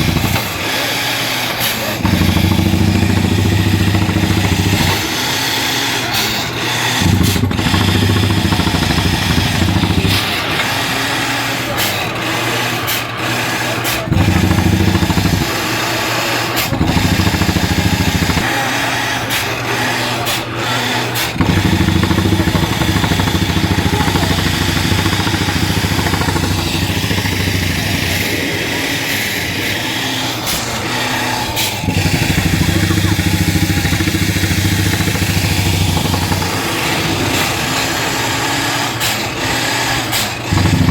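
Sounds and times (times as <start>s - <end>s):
drilling rig engine running: 0.0s - 40.9s.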